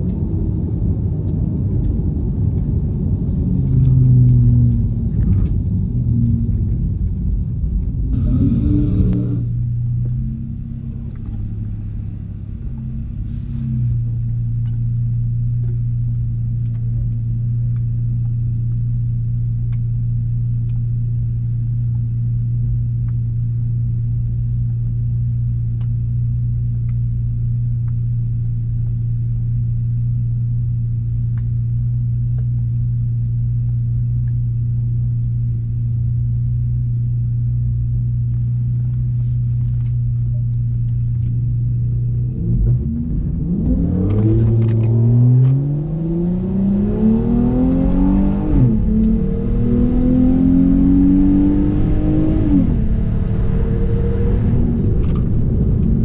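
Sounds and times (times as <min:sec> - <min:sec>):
car engine running: 0:00.0 - 0:56.0.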